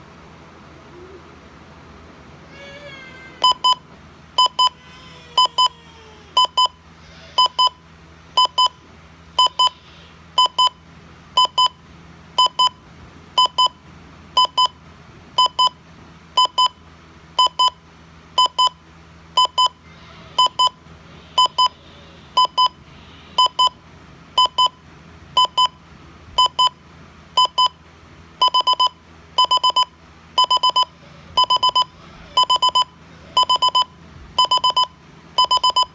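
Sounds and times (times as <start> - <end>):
alarm clock electronic beeps: 3.4 - 3.8, 4.4 - 4.8, 6.4 - 6.8, 7.4 - 7.8, 8.4 - 8.8, 9.4 - 9.7, 10.4 - 10.8, 11.4 - 11.8, 12.4 - 12.8, 13.4 - 13.8, 14.4 - 14.8, 15.4 - 15.8, 16.4 - 16.8, 17.4 - 17.8, 18.4 - 18.8, 19.4 - 19.8, 20.4 - 20.8, 21.4 - 21.7, 22.4 - 22.8, 23.4 - 23.8, 24.4 - 24.8, 25.4 - 25.8, 26.4 - 26.8, 27.4 - 27.8, 28.4 - 35.9.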